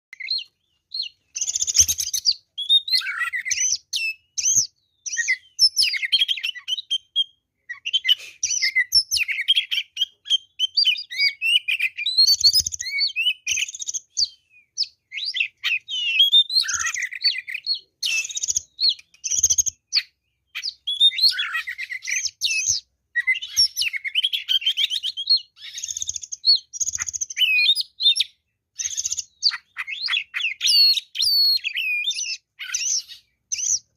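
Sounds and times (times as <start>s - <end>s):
bird singing: 0.1s - 33.9s.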